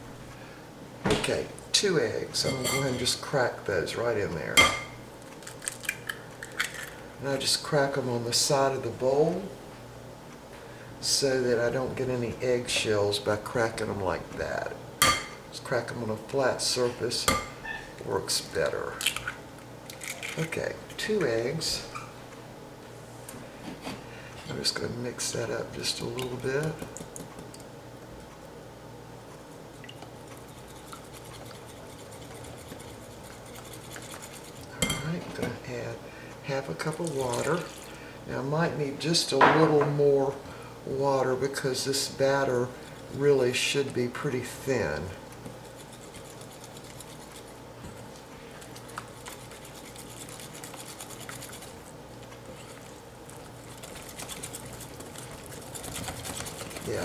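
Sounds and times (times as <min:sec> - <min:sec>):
steady low hum: 0:00.0 - 0:57.0
wet squishing and scraping in bowl: 0:23.2 - 0:27.6, 0:29.3 - 0:39.4, 0:41.0 - 0:57.0.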